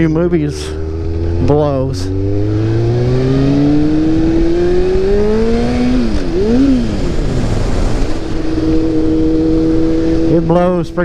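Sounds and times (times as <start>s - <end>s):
motorcycle engine accelerating: 0.0s - 11.0s.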